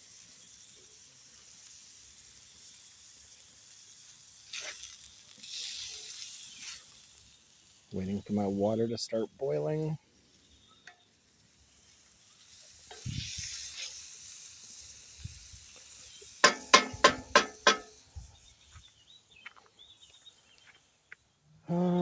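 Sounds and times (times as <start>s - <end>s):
meat sizzling in a pan: 0.0s - 8.8s, 10.0s - 18.5s
utensil tapping metal pan: 16.4s - 18.0s.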